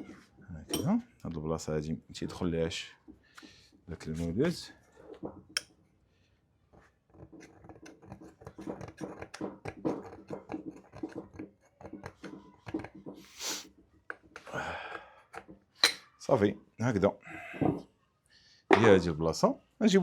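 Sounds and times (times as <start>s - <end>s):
scraping and clicking inside motor shell: 6.7s - 14.5s.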